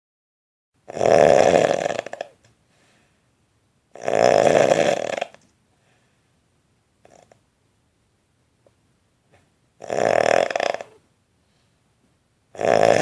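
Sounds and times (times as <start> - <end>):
man snoring loudly: 0.9 - 2.3, 4.0 - 5.4, 9.8 - 11.0, 12.6 - 13.0.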